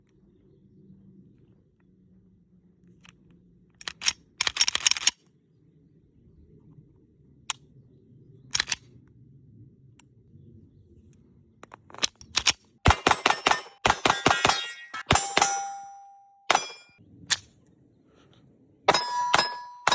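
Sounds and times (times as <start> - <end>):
pistol shots: 12.9 - 15.7.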